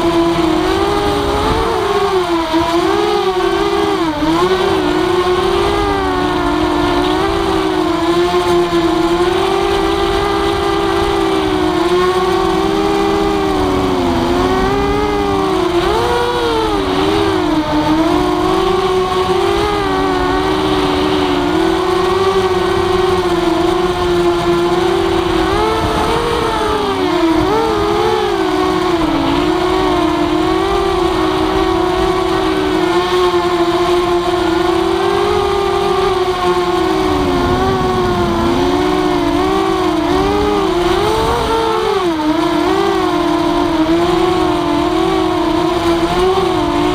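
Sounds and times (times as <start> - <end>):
quadcopter motors whining: 0.0 - 46.9.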